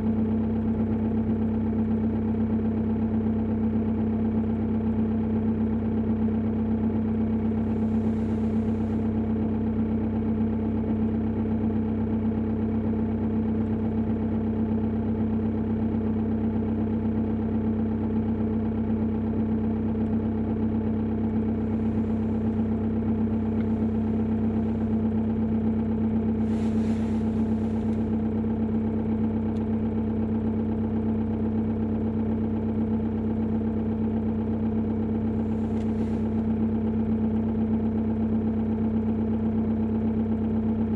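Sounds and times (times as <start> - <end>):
diesel engine idling with knock: 0.0 - 40.9.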